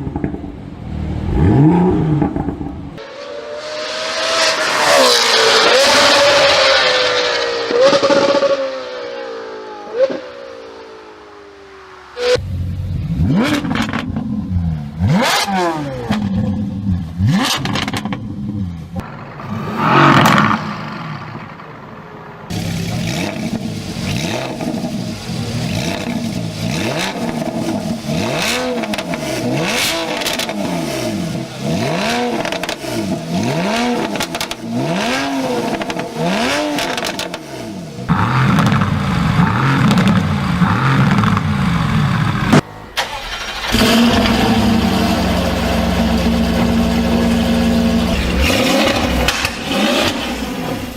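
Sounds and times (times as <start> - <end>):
exhaust crackles and pops: 0.0 - 0.6, 20.1 - 30.7, 38.1 - 42.7, 43.4 - 50.9
car exhaust revving: 0.0 - 50.9.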